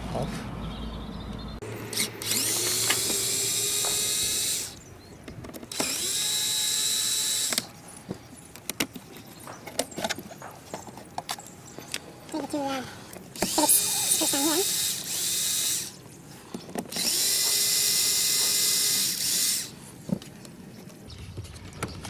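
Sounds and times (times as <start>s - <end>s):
cordless drill motor running: 1.6s - 21.1s
plastic parts clicking: 1.6s - 21.1s.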